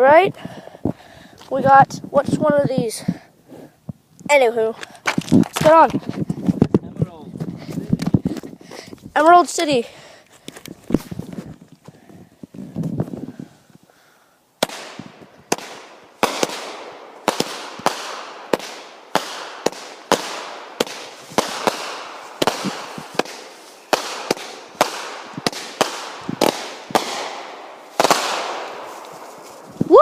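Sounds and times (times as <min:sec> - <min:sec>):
firework bangs with crackling hiss: 0:14.6 - 0:29.6.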